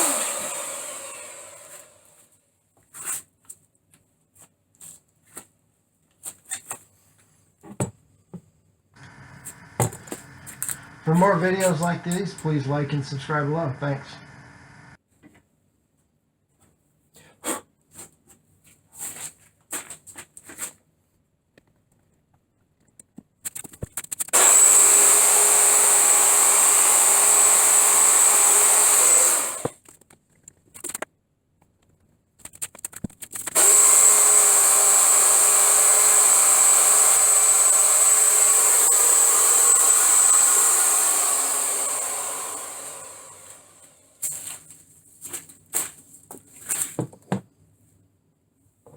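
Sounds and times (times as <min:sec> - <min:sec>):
electric router whining: 0:00.0 - 0:02.2, 0:09.0 - 0:15.0, 0:24.4 - 0:29.7, 0:33.6 - 0:44.0.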